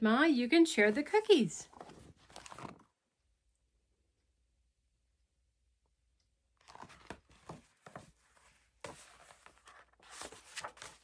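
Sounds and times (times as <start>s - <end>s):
paper rustling and crinkling: 0.9s - 2.9s, 6.6s - 11.0s.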